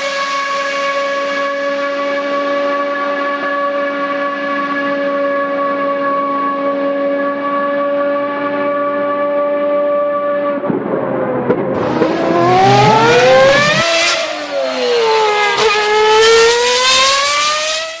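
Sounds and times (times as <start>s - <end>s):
racing car engine revving: 11.7s - 18.0s.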